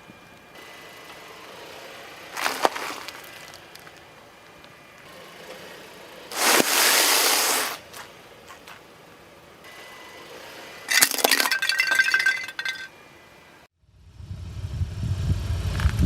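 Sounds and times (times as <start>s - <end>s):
tyre crunching objects: 2.3s - 4.0s, 6.3s - 8.8s.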